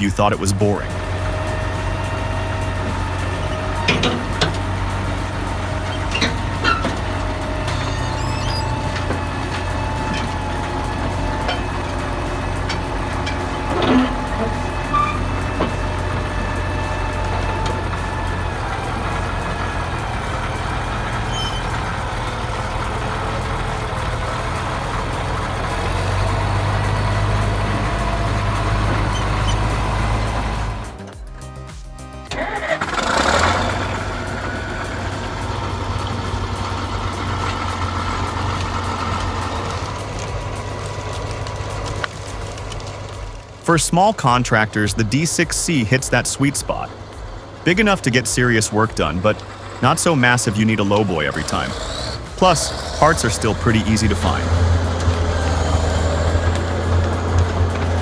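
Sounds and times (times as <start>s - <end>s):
wavering squealing tones: 0.0s - 43.6s
bulldozer engine running: 0.0s - 58.0s
metallic clanks: 0.9s - 43.6s.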